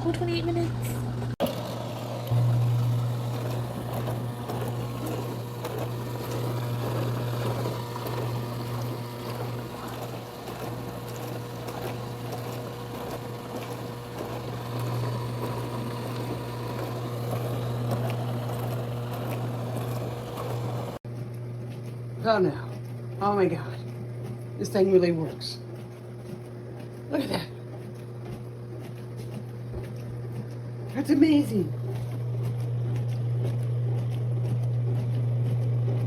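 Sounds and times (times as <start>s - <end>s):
pump motor hum: 0.0s - 36.0s
water spraying and sloshing: 1.4s - 36.0s.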